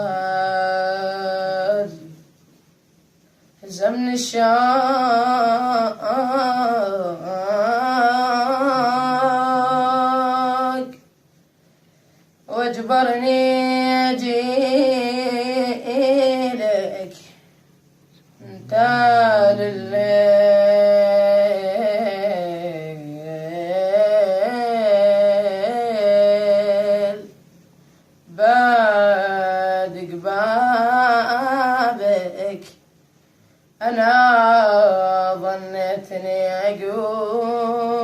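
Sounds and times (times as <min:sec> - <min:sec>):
person singing a long held note: 0:18.4 - 0:22.6
person singing a long note: 0:18.4 - 0:27.3.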